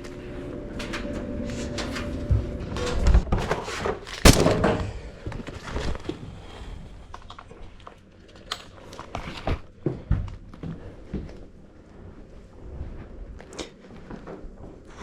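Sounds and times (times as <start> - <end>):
loud gunshot: 4.2 - 5.0.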